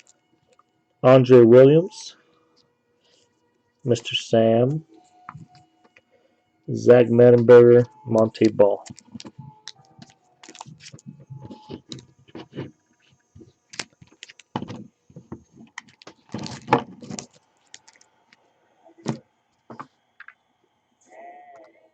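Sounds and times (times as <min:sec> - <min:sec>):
cards and packaging rustling: 0:07.2 - 0:18.4.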